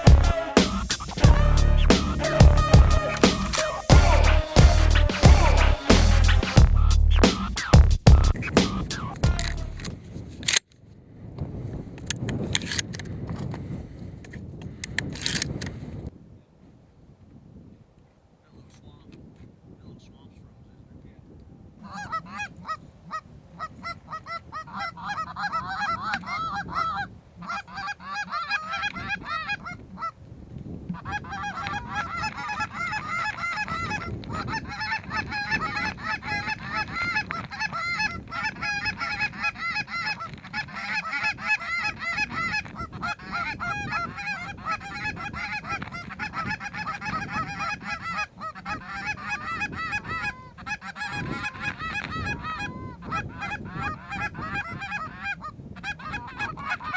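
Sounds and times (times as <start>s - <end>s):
geese honking: 0.0s - 9.8s, 21.8s - 30.1s, 31.0s - 56.9s.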